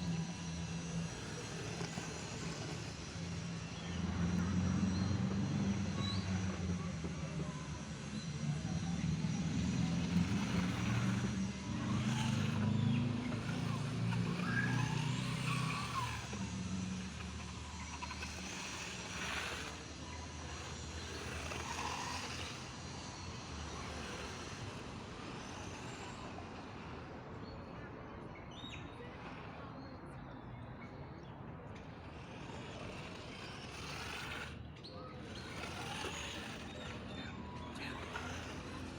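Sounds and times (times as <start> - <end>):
electric motor whining: 0.0 - 30.1, 31.6 - 38.9
steady rumble: 5.8 - 28.0, 31.4 - 38.9.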